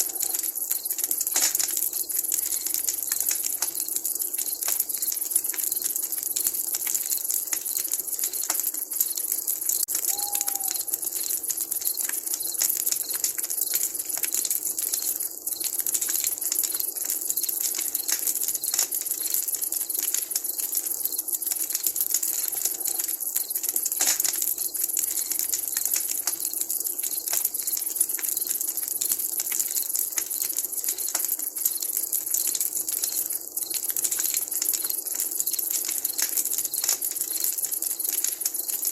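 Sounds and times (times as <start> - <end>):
campfire crackling: 0.0 - 38.9
owl call: 10.0 - 11.0.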